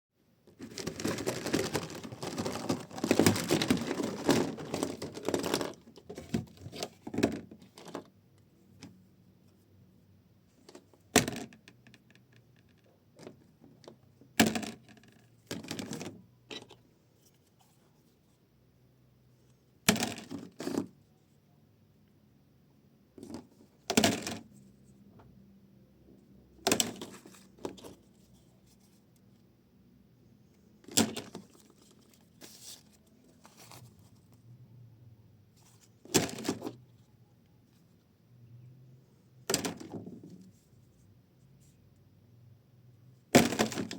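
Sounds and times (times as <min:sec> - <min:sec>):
plastic toys clattering: 0:00.5 - 0:08.1, 0:10.7 - 0:16.8, 0:19.9 - 0:20.9, 0:23.2 - 0:24.6, 0:26.6 - 0:29.0, 0:30.8 - 0:34.0, 0:35.6 - 0:37.1, 0:39.4 - 0:40.7, 0:43.3 - 0:43.9.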